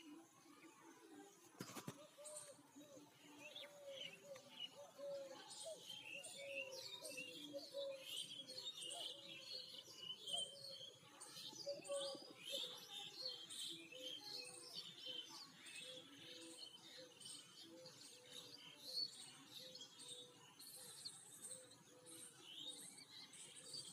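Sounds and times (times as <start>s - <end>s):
small birds chirping: 0.0s - 23.9s.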